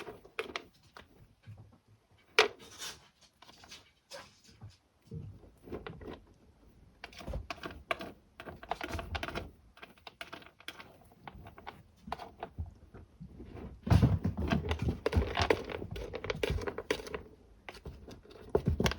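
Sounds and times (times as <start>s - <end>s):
kittens scratching in cat litter: 0.0s - 1.5s, 2.2s - 18.9s.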